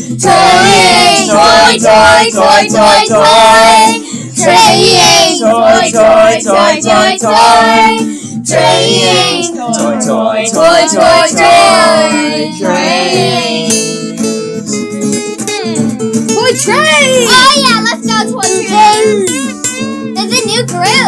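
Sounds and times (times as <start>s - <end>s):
person singing: 0.0s - 14.6s, 18.4s - 19.7s
guitar chords: 0.0s - 21.0s.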